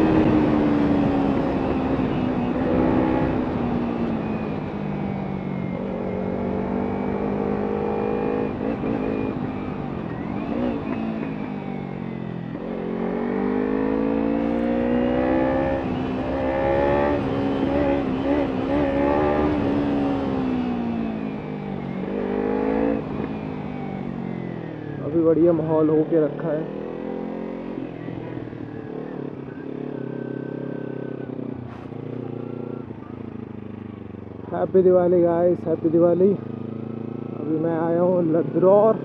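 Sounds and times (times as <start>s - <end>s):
motorcycle engine accelerating: 0.0s - 39.0s.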